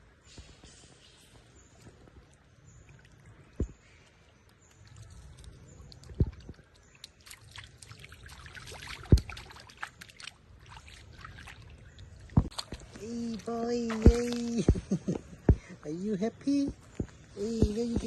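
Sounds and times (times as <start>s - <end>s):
pool water splashing: 2.0s - 15.4s.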